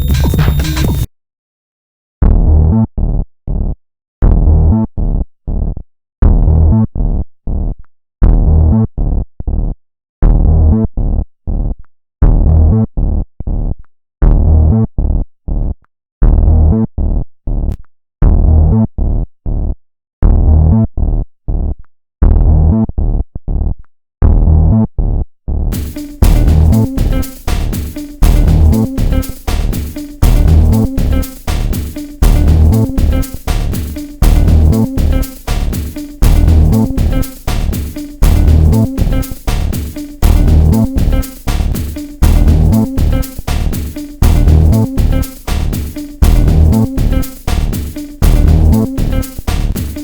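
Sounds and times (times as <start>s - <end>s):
synthesizer pattern: 0.0s - 1.1s, 25.7s - 50.0s.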